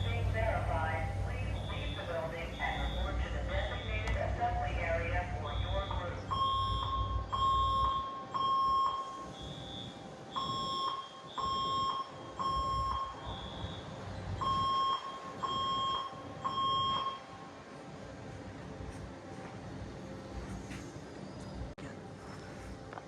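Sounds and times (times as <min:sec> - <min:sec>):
higher-pitched alarm tone beeping: 0:01.5 - 0:04.1, 0:05.4 - 0:17.3
fire alarm beeps: 0:01.5 - 0:04.2, 0:05.2 - 0:17.5.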